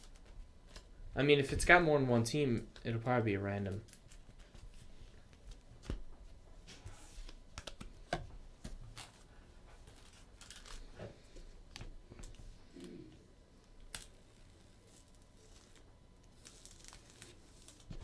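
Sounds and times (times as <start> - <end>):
trading cards clicking and rustling: 7.2 - 9.2, 9.9 - 10.9.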